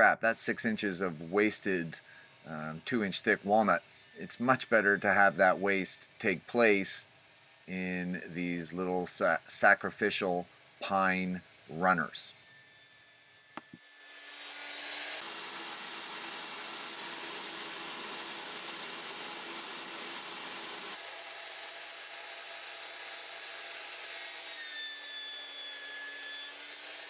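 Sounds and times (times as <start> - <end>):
thickness planer planing wood: 0.5 - 12.5, 14.4 - 21.0.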